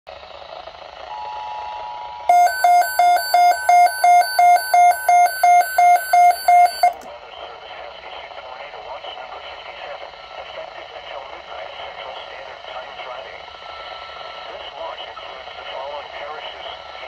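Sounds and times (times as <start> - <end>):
rapid pulsing beeps: 2.3 - 7.0.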